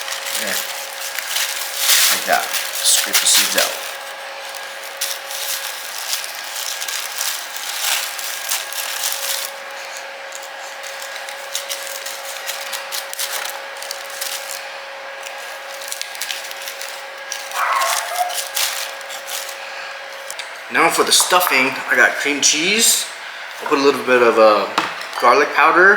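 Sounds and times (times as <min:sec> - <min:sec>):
spoon scraping pepper seeds: 0:00.0 - 0:14.6.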